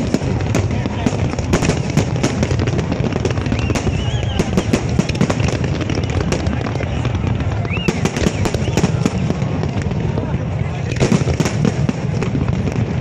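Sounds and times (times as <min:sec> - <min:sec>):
fireworks bangs and crackles: 0:00.0 - 0:13.0
firework whistles: 0:03.1 - 0:09.4.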